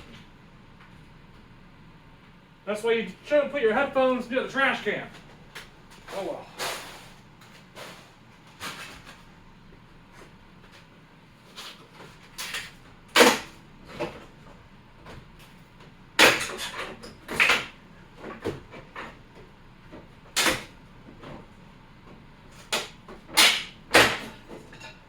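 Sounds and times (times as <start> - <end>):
wooden boards cracking and splitting: 22.7 - 24.4.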